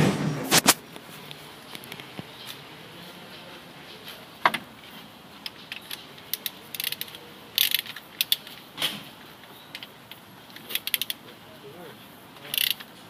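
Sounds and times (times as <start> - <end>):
ratchet wrench clicking: 5.4 - 8.6, 10.5 - 11.2, 12.4 - 12.9.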